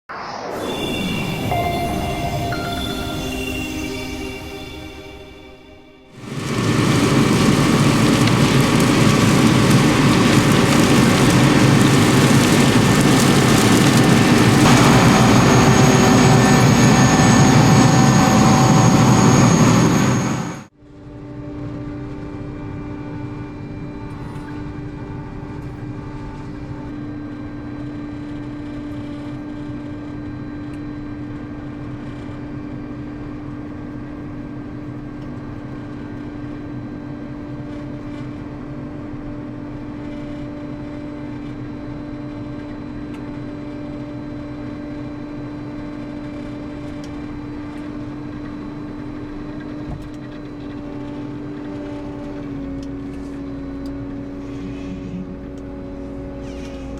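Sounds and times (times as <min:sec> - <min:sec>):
harvester machine drone: 0:00.1 - 0:20.7.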